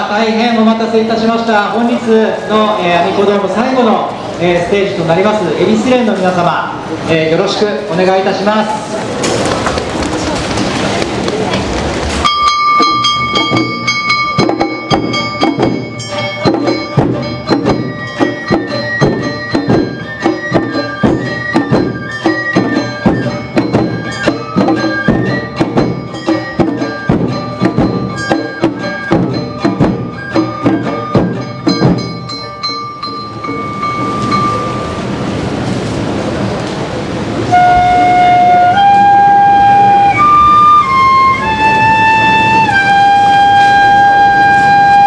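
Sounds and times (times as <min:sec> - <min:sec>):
bamboo flute melody: 0:00.0 - 0:04.0, 0:12.2 - 0:35.2, 0:37.4 - 0:45.0
drum and percussion strikes: 0:09.2 - 0:35.8.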